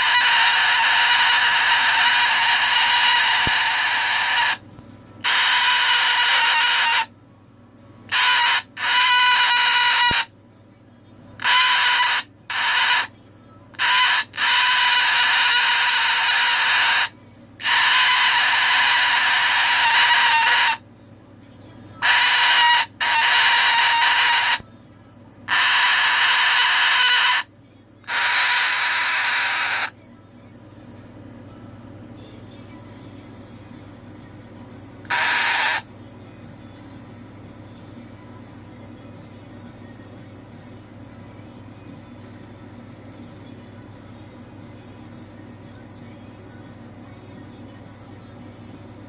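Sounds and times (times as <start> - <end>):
cockatoo screaming: 0.0 - 4.6, 5.2 - 7.1, 8.1 - 10.3, 11.4 - 13.1, 13.7 - 20.8, 22.0 - 24.6, 25.5 - 29.9, 35.0 - 35.9.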